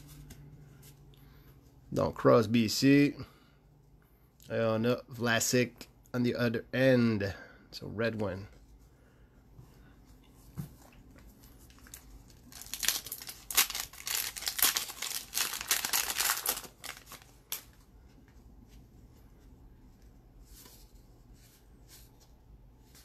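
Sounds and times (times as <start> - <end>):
wrapper being torn and crinkled: 11.6 - 17.8.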